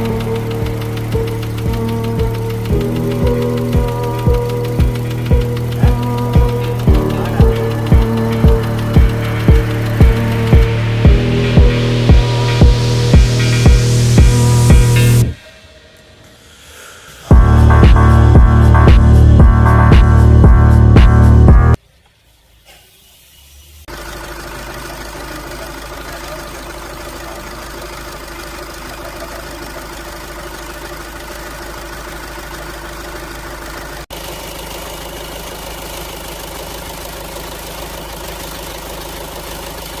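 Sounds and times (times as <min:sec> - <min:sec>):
car engine idling with knocking: 0:00.0 - 0:15.4, 0:17.3 - 0:21.8, 0:23.9 - 0:40.0.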